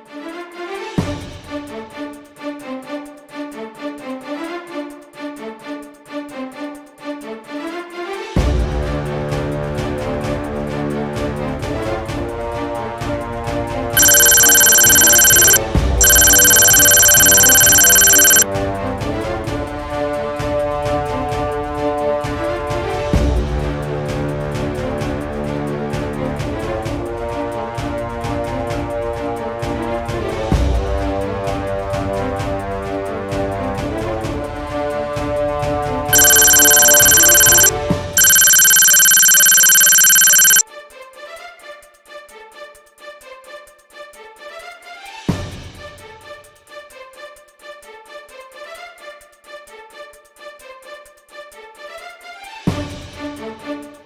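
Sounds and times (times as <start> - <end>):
high electronic beep tone: 14.0 - 18.4, 36.2 - 40.6.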